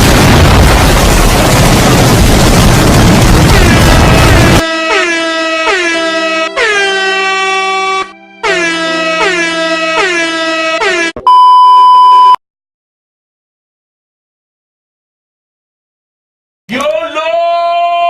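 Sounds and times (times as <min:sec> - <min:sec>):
loud noisy blast: 0:00.0 - 0:07.8
distorted air horn blasts: 0:04.0 - 0:11.2
high censor beep: 0:11.2 - 0:12.4.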